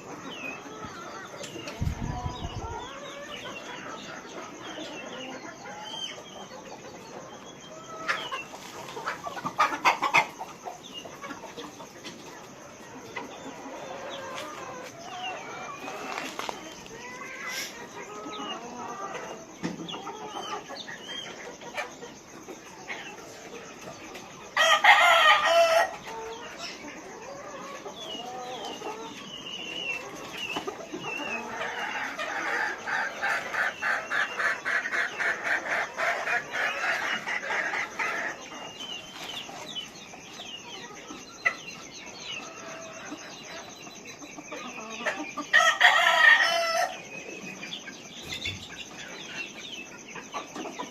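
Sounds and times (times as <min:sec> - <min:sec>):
chickens clucking: 0:00.0 - 0:50.9
rooster crowing: 0:24.6 - 0:26.0, 0:45.5 - 0:47.0.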